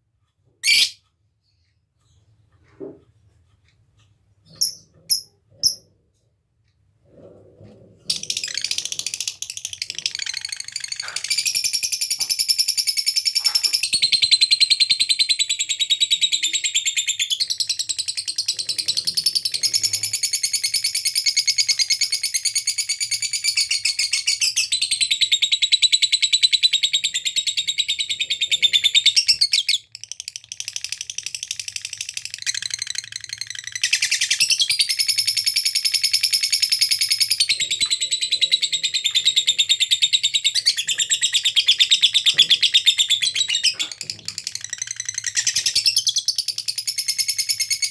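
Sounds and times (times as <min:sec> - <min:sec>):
lovebird trilling chatter: 0:00.6 - 0:01.0.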